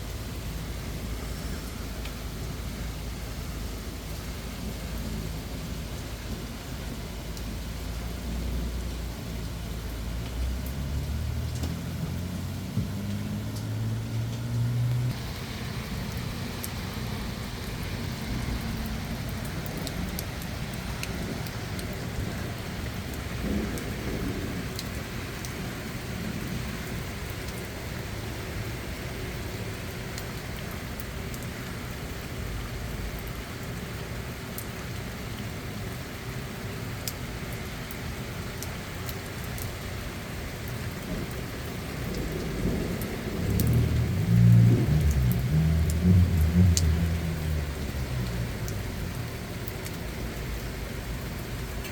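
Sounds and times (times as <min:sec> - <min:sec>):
steady rain falling: 0:00.0 - 0:51.9
low rumble: 0:43.4 - 0:49.2.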